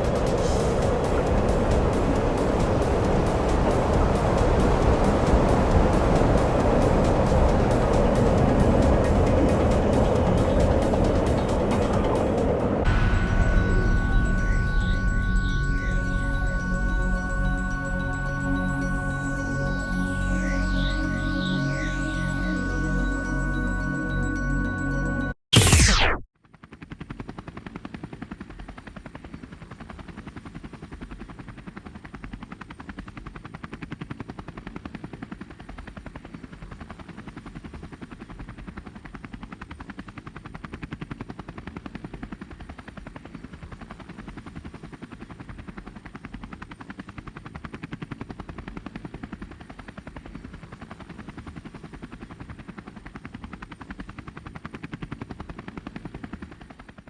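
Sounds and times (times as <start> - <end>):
faint high whine: 0.0 - 26.2.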